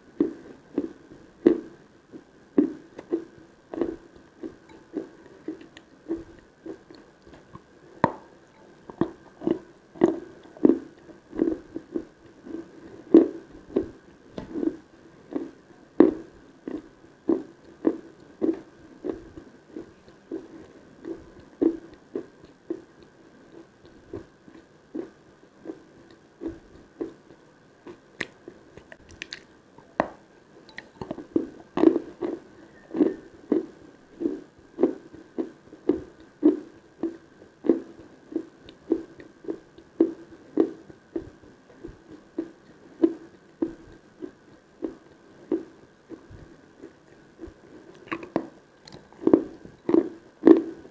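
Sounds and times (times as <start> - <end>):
chewing chalk: 42.4 - 50.7.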